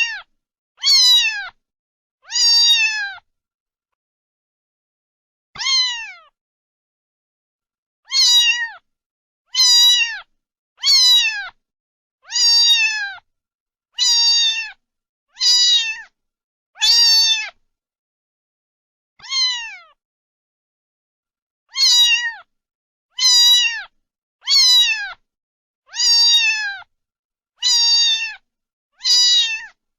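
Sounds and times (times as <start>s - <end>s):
cat meowing: 0.0s - 1.6s, 2.2s - 3.3s, 5.6s - 6.4s, 8.1s - 8.8s, 9.5s - 11.6s, 12.2s - 13.2s, 14.0s - 16.1s, 16.8s - 17.6s, 19.2s - 20.0s, 21.7s - 22.5s, 23.1s - 25.2s, 25.9s - 26.9s, 27.6s - 28.4s, 29.0s - 29.8s.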